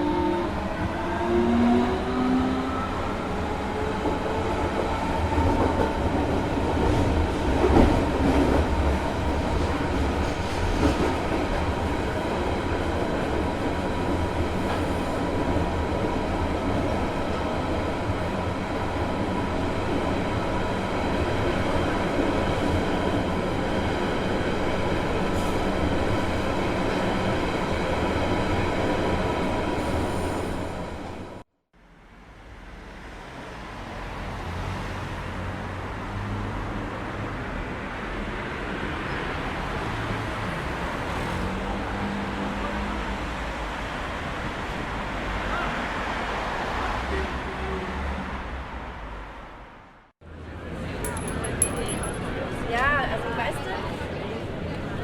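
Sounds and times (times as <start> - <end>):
train rumbling on rails: 0.0 - 31.4
city ambience noise: 0.0 - 55.0.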